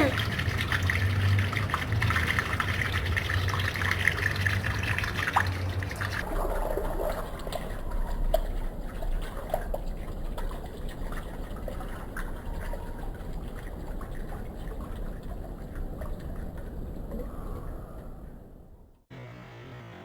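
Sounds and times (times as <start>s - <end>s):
water trickling and running: 0.0s - 17.5s
small drips and ticks: 0.0s - 18.4s
low hum: 14.4s - 20.0s.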